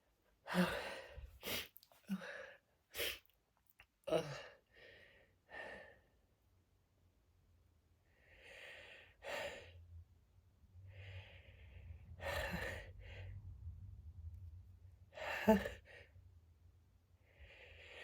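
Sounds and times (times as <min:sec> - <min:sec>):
person breathing and gasping: 0:00.5 - 0:03.2, 0:10.9 - 0:13.4, 0:15.2 - 0:16.1.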